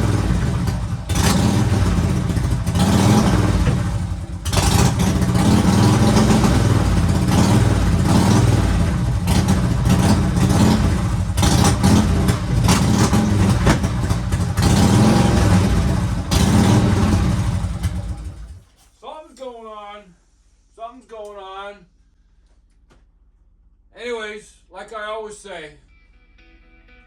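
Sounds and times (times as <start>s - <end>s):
motorcycle engine revving: 0.0s - 18.7s.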